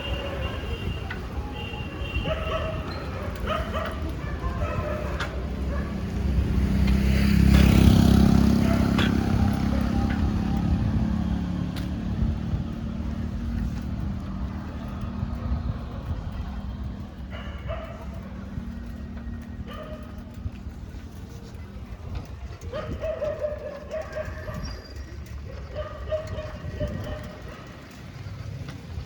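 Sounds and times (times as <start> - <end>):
dog barking: 2.2 - 6.1, 8.4 - 10.0, 17.3 - 18.2, 19.7 - 20.2, 22.7 - 24.8, 25.5 - 27.7
vehicle engine passing by: 5.4 - 22.0.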